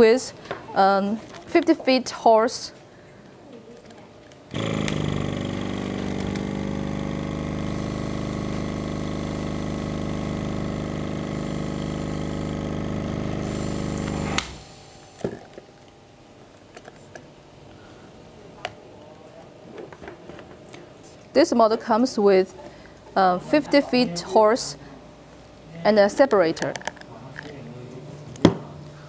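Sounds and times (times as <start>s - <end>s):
air compressor humming: 4.5s - 18.5s.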